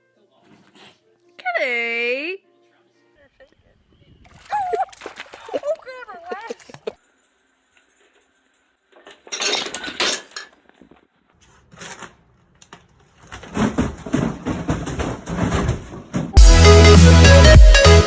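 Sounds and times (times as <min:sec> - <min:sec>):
hard objects clattering and clinking: 0:08.9 - 0:11.1, 0:11.7 - 0:16.4
electronic music with heavy beat: 0:16.4 - 0:18.0.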